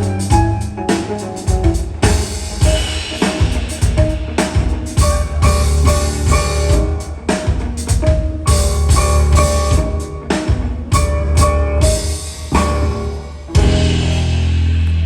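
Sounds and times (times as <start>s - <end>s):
heavy bass line: 0.0s - 0.7s, 2.6s - 7.2s, 8.4s - 10.0s, 11.0s - 15.0s
drum kit playing: 0.0s - 15.0s.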